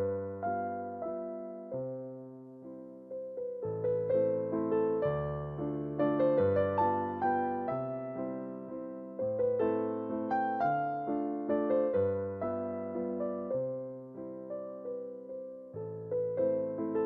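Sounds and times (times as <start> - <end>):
gentle piano piece: 0.0 - 17.0.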